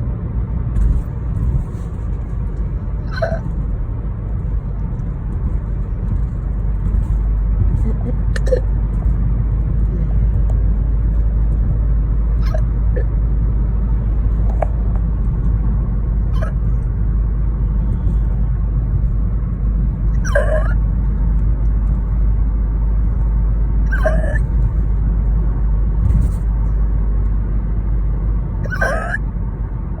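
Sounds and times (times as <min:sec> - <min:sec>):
steady low rumble: 0:00.0 - 0:30.0
woman hiccupping: 0:03.1 - 0:03.5, 0:07.9 - 0:08.7, 0:12.4 - 0:13.1, 0:16.4 - 0:16.6, 0:20.2 - 0:20.8, 0:23.9 - 0:24.5, 0:28.6 - 0:29.2.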